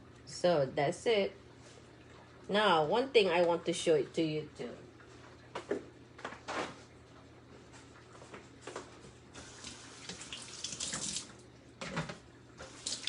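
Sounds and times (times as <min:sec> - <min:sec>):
tap water running into sink: 0:09.4 - 0:13.0.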